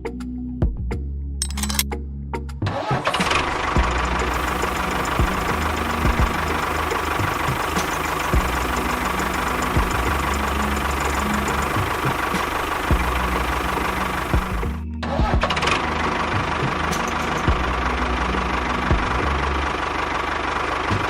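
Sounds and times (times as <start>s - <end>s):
engine idling with knocking: 3.1s - 21.0s.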